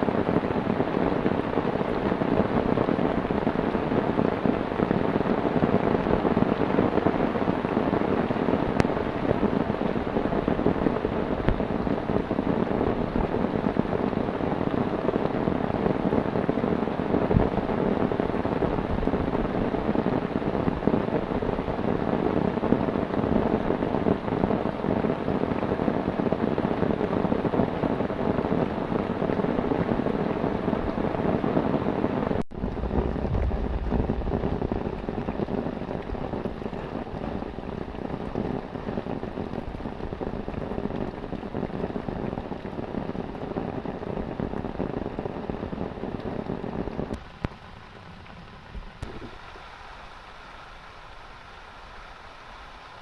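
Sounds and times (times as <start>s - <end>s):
heavy rain falling: 0.0s - 53.0s
brief low rumble: 32.5s - 35.1s.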